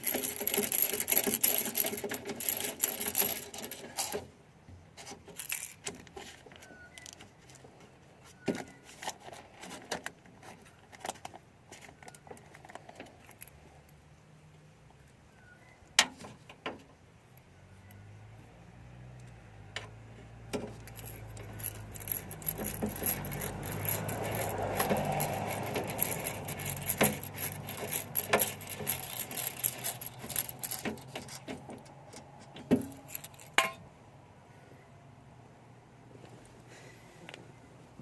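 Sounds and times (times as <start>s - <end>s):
tools and parts clicking and rattling: 0.0s - 4.4s, 5.0s - 14.0s, 19.2s - 33.9s.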